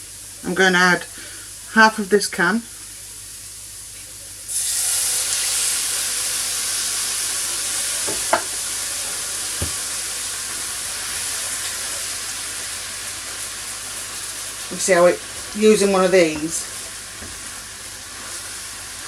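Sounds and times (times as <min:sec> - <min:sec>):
tomatoes sizzling in a hot pot: 0:00.0 - 0:19.0
spoon knocking against pot: 0:08.1 - 0:08.6.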